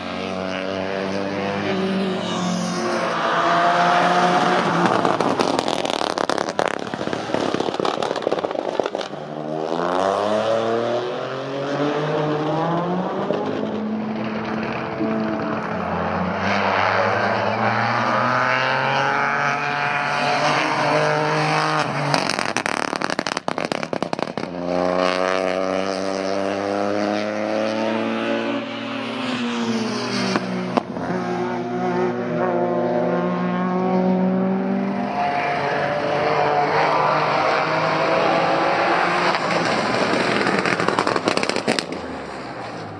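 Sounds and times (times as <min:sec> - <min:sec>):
rally car engine revving: 0:00.0 - 0:42.9
exhaust crackles and bangs: 0:04.8 - 0:09.2, 0:39.6 - 0:42.1.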